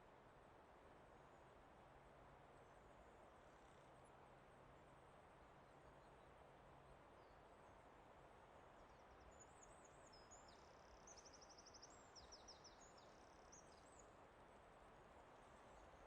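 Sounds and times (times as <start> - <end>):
faint forest ambience hiss: 0.0 - 16.0
songbird singing trills: 9.3 - 14.1.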